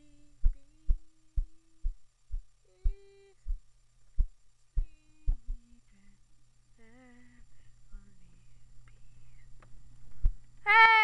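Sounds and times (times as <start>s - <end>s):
person singing long notes: 2.6s - 3.6s.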